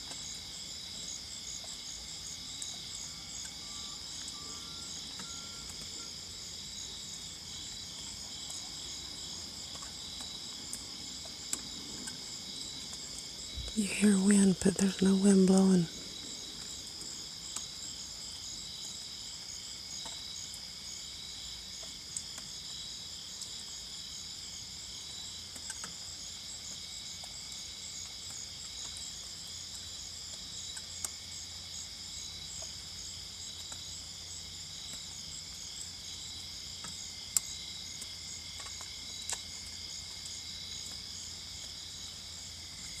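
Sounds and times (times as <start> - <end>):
faint ticks: 0.0 - 0.4, 2.5 - 6.0, 7.8 - 13.8, 16.5 - 20.7, 25.4 - 31.2, 32.5 - 41.8
crickets and insects trilling: 0.0 - 43.0.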